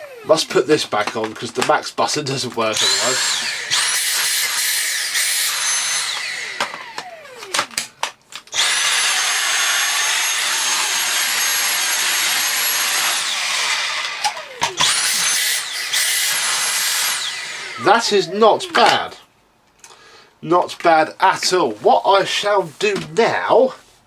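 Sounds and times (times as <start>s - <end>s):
vacuum cleaner motor whine: 0.0s - 1.2s, 2.6s - 7.9s, 8.5s - 19.0s.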